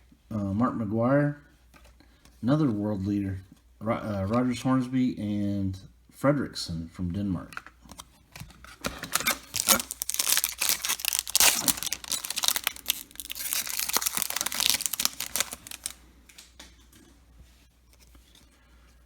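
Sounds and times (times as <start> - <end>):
cards rustling: 7.6 - 17.0
wrapper tearing and crinkling: 8.7 - 16.5.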